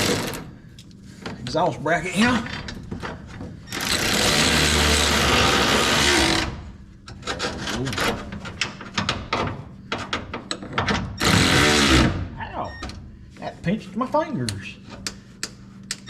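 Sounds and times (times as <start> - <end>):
impact wrench running: 0.0 - 0.5, 3.7 - 7.8, 11.2 - 12.2.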